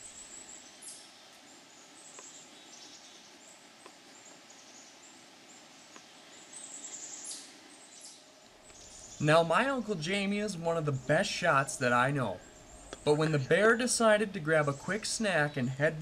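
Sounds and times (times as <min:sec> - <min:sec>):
faint ticks: 0:05.9 - 0:06.2.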